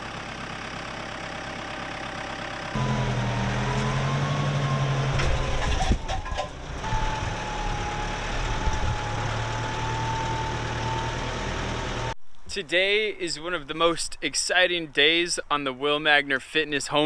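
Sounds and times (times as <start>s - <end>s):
heavy engine running: 0.0s - 12.2s
short rattle and clatter: 5.1s - 7.0s.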